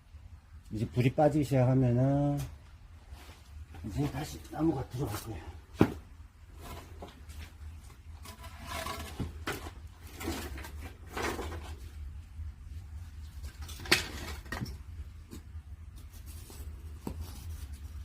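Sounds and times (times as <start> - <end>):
low rumble of kiln: 0.0 - 18.0
knocks and crackles in kiln: 3.6 - 12.2, 12.8 - 17.4.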